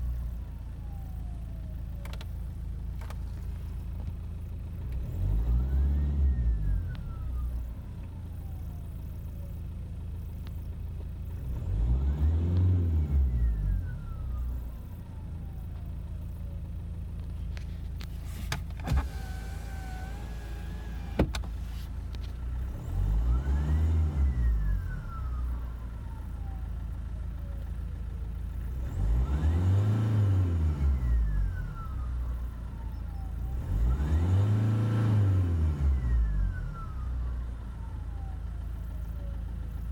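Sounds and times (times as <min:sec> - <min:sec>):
diesel engine revving: 0:04.8 - 0:07.7, 0:11.3 - 0:14.6, 0:18.2 - 0:26.5, 0:28.5 - 0:38.8.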